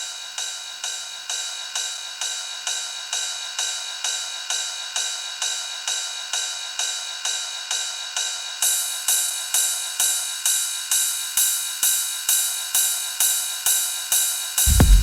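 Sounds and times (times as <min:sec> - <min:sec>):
metallic cymbal-like percussion loop: 0:14.6 - 0:15.0.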